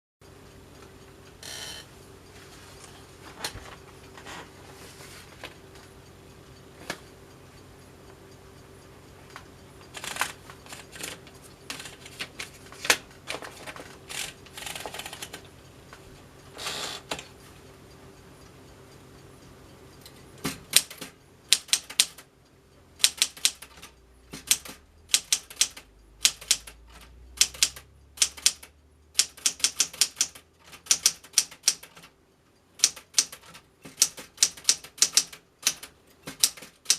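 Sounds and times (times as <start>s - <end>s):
faint steady hum: 0.2s - 29.4s
typewriter mechanical rasps: 1.4s - 1.9s, 9.9s - 15.5s, 16.5s - 17.3s, 20.4s - 22.2s, 23.0s - 32.1s, 32.8s - 36.9s
typewriter key strikes: 9.9s - 13.0s, 20.4s - 22.2s, 23.0s - 32.1s, 32.8s - 36.9s.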